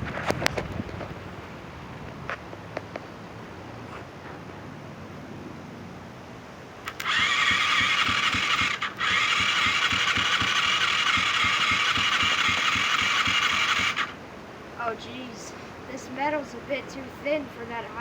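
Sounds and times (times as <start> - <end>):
electric starter cranking engine: 6.8 - 14.2.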